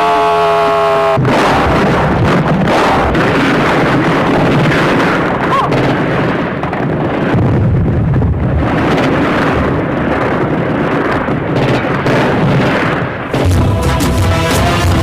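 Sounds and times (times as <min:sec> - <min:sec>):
distorted air-raid siren rumble: 0:00.0 - 0:01.7, 0:13.3 - 0:15.0.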